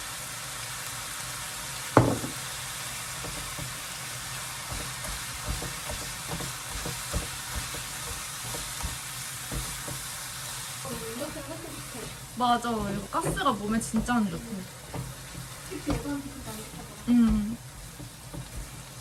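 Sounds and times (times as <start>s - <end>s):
food sizzling in a frying pan: 0.0s - 19.0s
utensil tapping a pan: 2.0s - 2.4s, 4.6s - 10.1s, 12.8s - 19.0s.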